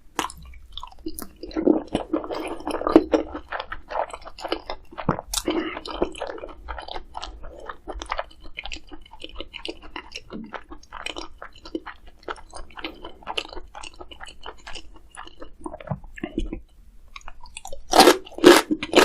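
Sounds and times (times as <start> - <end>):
person chewing crunchy food: 0.2 - 19.0.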